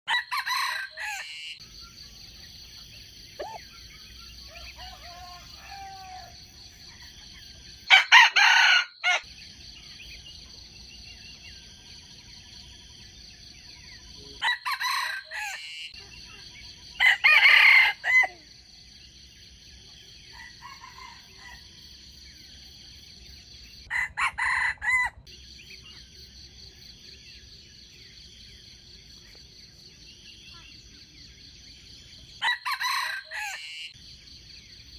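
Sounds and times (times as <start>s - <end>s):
rooster crowing: 0.1s - 1.5s, 4.4s - 6.6s, 7.9s - 9.3s, 14.4s - 15.9s, 17.0s - 18.4s, 20.3s - 21.6s, 23.9s - 25.2s, 32.4s - 33.9s.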